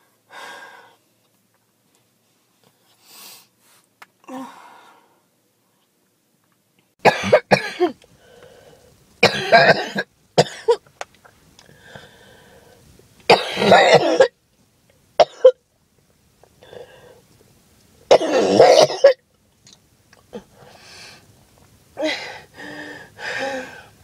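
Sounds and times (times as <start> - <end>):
quiet breaths: 0.0 - 6.0, 8.0 - 9.1, 11.6 - 13.1, 16.4 - 17.4, 20.2 - 24.0
woman coughing: 7.0 - 8.0, 9.2 - 10.8, 13.3 - 14.3, 15.2 - 15.6, 18.1 - 19.2.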